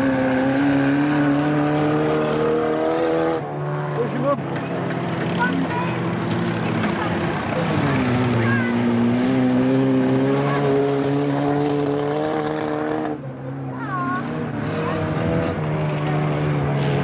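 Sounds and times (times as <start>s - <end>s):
race car engines at high revs: 0.0s - 17.0s.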